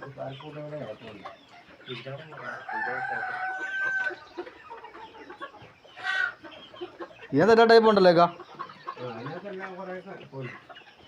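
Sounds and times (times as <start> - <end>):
chickens clucking: 0.0 - 11.0
rooster crowing: 2.4 - 4.3.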